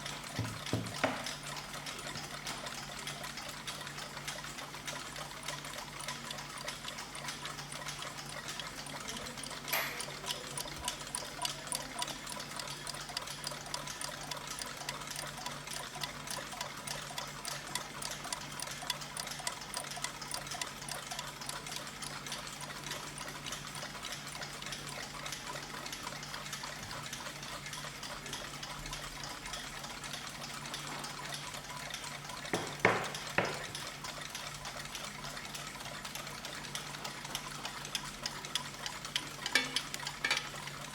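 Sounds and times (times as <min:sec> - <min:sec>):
clocks ticking: 0:00.0 - 0:40.9
sharp knocks: 0:32.6 - 0:33.7.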